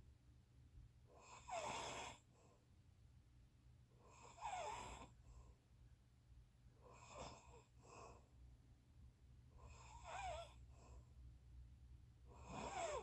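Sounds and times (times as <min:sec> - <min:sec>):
faint breath: 0:04.5 - 0:05.7, 0:07.0 - 0:08.4, 0:10.4 - 0:11.3
person snoring with whistle: 0:12.4 - 0:13.0.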